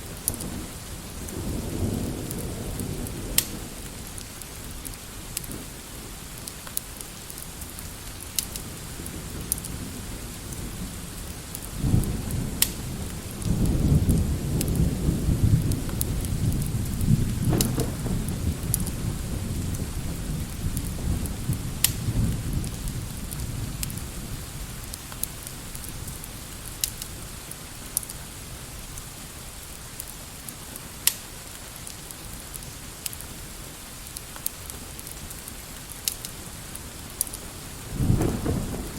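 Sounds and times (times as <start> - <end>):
steady rain: 0.0 - 38.9
low thunder rumble: 8.7 - 25.0, 37.6 - 38.9.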